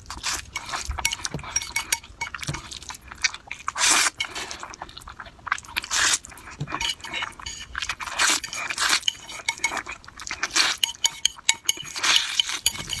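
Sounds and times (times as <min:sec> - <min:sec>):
person chewing: 0:00.0 - 0:13.0
utensils clinking against bowl: 0:00.6 - 0:02.8, 0:06.5 - 0:13.0.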